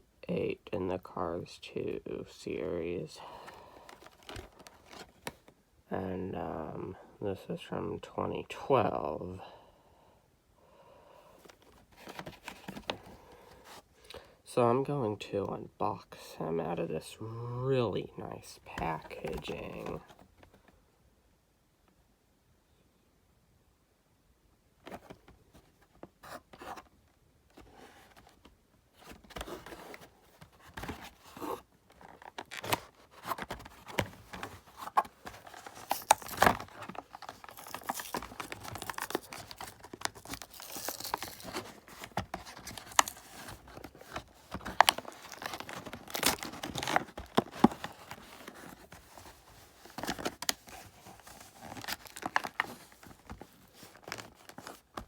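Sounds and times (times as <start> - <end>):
plastic blister crinkling: 29.1 - 55.0
cardboard ripping: 30.6 - 54.8
sharp clicks and rustles: 32.0 - 54.7.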